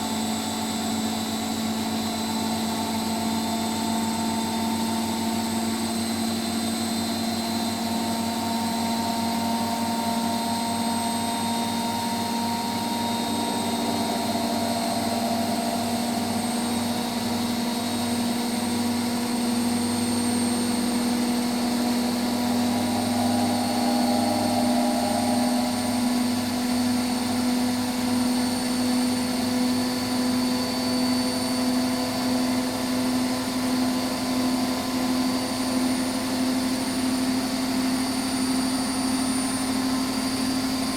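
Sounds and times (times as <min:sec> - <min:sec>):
washing machine motor whine: 0:00.0 - 0:40.9
faint regular pulsing: 0:21.1 - 0:27.8.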